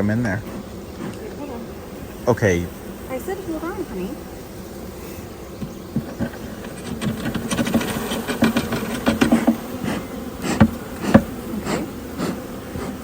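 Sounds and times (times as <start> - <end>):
bees buzzing: 0.0 - 13.0
knocks of hive frames: 5.4 - 13.0.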